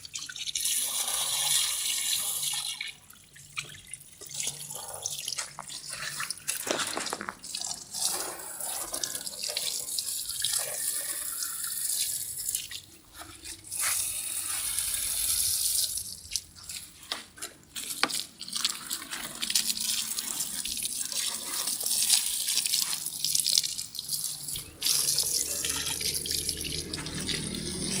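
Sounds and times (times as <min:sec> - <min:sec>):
water spray hissing: 0:13.7 - 0:16.1.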